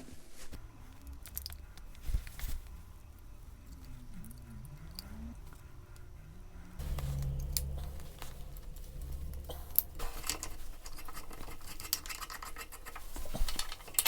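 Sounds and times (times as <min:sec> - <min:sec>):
low hum: 0:06.2 - 0:12.9.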